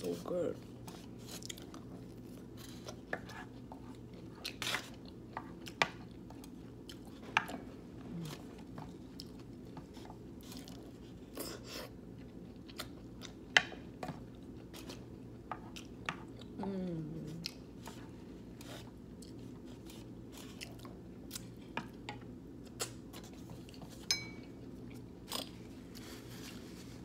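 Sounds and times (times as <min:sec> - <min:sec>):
steady low hum: 0:00.0 - 0:27.0
person chewing food: 0:00.6 - 0:16.6, 0:17.2 - 0:27.0.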